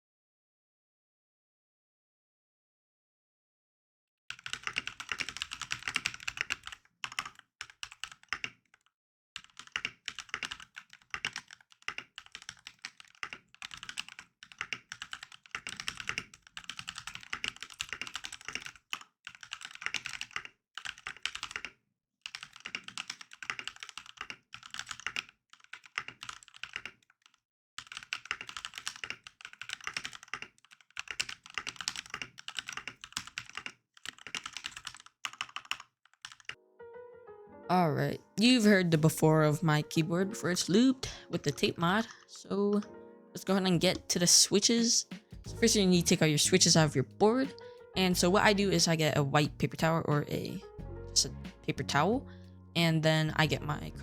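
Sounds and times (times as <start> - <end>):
mechanical keyboard typing: 4.3 - 36.6.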